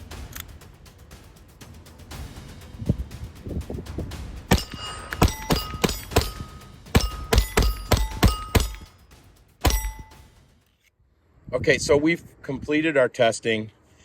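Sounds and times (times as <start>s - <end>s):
pistol shots: 4.5s - 8.9s, 9.6s - 10.2s
metallic ring of steel target: 4.5s - 10.4s.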